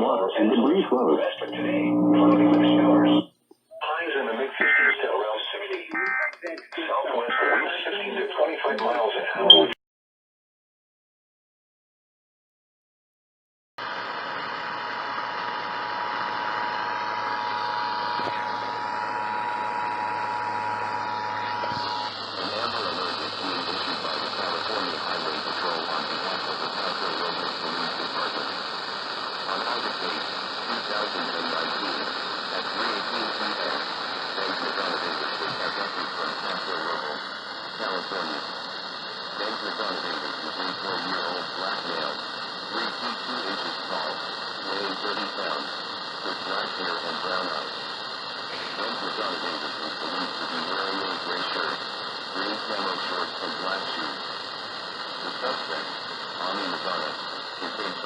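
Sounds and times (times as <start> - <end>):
radio static hiss: 0.0 - 9.8, 13.8 - 58.0
two-tone alert signal: 9.4 - 9.8.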